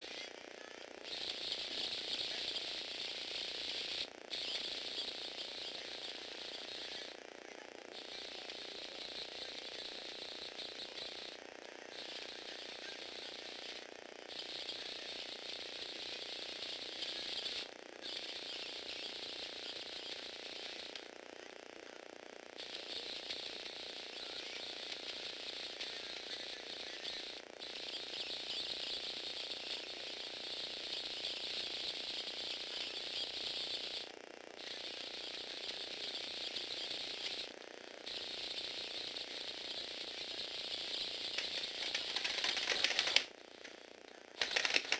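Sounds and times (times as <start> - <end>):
small electric motor and gears: 0.0 - 44.9
robot legs clicking: 41.3 - 43.3, 44.4 - 44.9.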